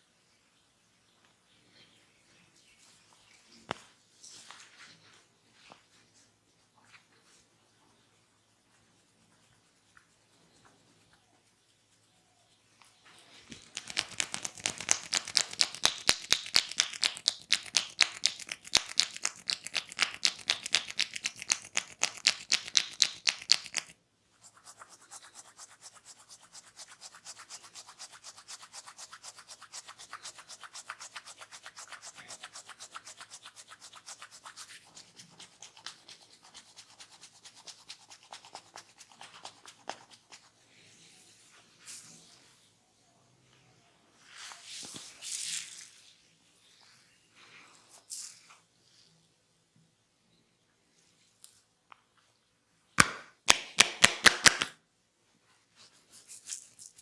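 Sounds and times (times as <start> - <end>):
hands rubbing on skin: 13.4 - 42.6, 44.2 - 49.1, 55.8 - 57.0.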